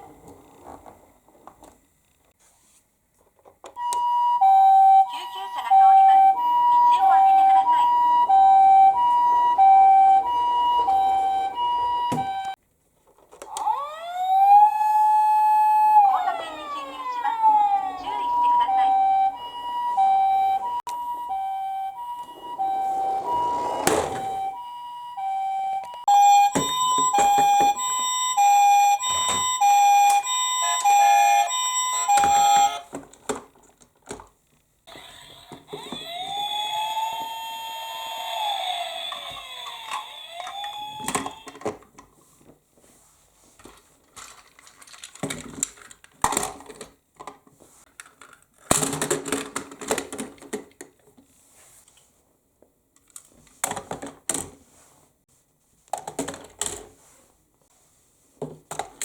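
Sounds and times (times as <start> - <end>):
siren wail rising and falling: 3.8 - 12.6, 13.6 - 32.8, 35.8 - 41.6
toy two-tone electronic siren: 3.8 - 12.6, 13.5 - 32.9, 34.9 - 41.8.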